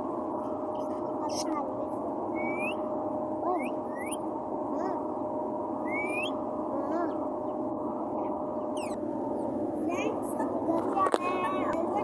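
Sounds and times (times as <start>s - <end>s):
parrot whistling: 2.4s - 2.8s, 3.6s - 4.2s, 5.8s - 6.4s, 8.8s - 9.0s.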